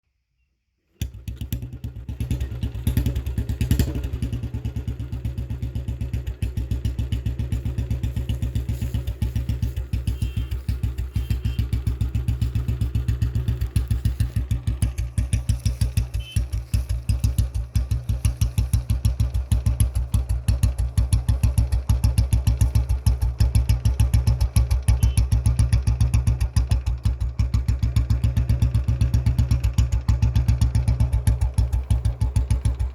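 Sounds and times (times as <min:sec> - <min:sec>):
motorcycle engine idling: 0:01.0 - 0:32.9.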